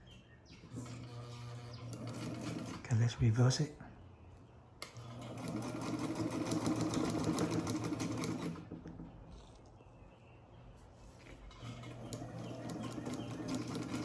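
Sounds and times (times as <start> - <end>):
sewing machine motor hum: 0.6 - 2.9, 4.8 - 9.2, 11.3 - 14.0.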